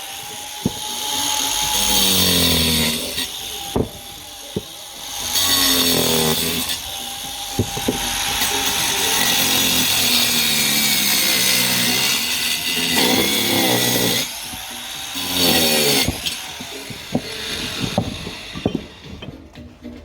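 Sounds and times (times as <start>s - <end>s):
power saw grinding brick: 0.0s - 20.0s
sharp knocks: 7.6s - 8.1s, 16.0s - 19.5s.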